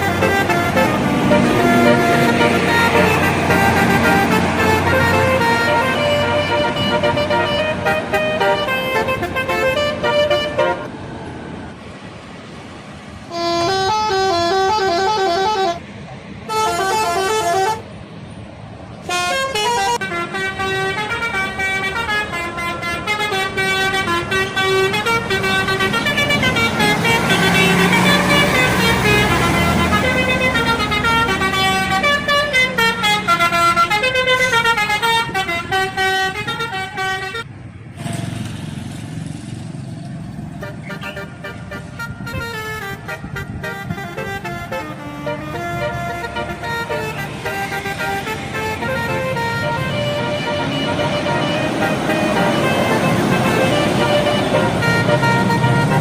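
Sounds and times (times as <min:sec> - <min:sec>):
bus melody horns: 0:00.0 - 0:11.0, 0:13.2 - 0:18.0, 0:19.0 - 0:38.2, 0:40.5 - 0:56.0
engine and road noise: 0:00.0 - 0:56.0.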